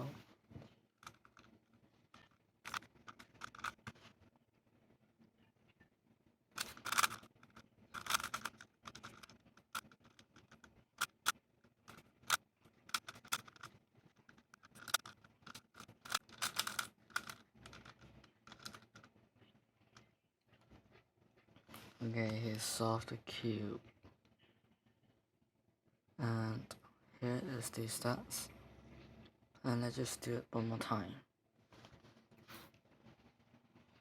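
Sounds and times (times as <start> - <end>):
puzzle cube clacking: 1.0 - 1.5, 2.2 - 4.0, 6.6 - 11.3, 11.9 - 19.1
sharp clicks: 6.6 - 7.3, 8.0 - 11.3, 14.3 - 19.0.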